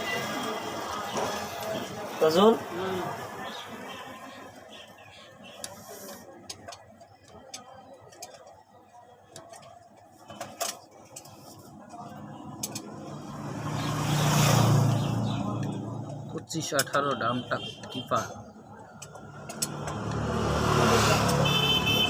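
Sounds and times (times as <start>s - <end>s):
vehicle engine: 11.0s - 16.8s, 18.2s - 22.0s
metallic clicks of hand tools: 19.0s - 20.2s.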